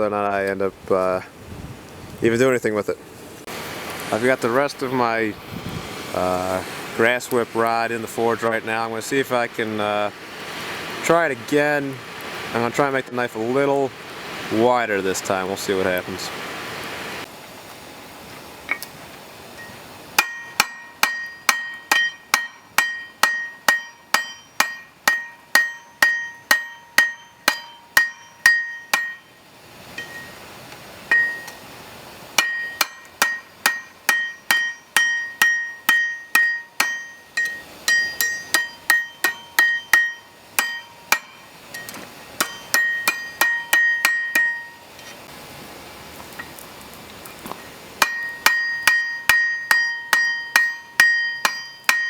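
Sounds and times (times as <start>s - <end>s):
hammer ringing on anvil: 19.6s - 29.4s, 30.0s - 30.4s, 31.1s - 31.6s, 32.4s - 44.9s, 48.0s - 52.0s.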